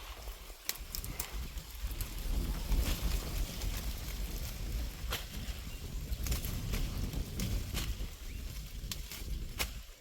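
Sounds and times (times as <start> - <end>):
wind rumbling on microphone: 0.0 - 10.0.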